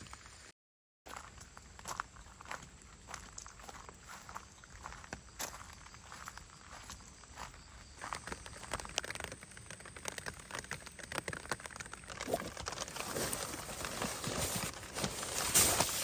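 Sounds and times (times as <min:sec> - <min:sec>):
rain pattering: 0:08.4 - 0:13.1
rustling: 0:08.7 - 0:16.0.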